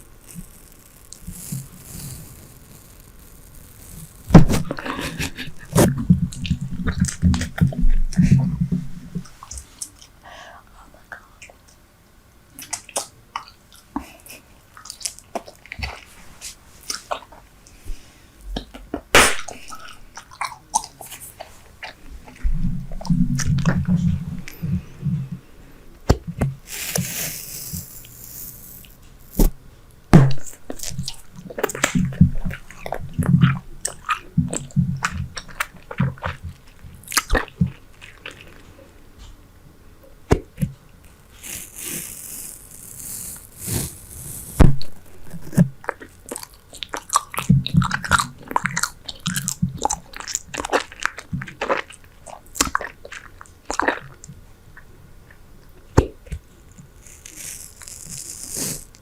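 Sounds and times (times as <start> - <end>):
gum chewing with wet smacking: 12.6 - 16.1, 18.6 - 25.5, 30.4 - 38.8, 45.1 - 59.0.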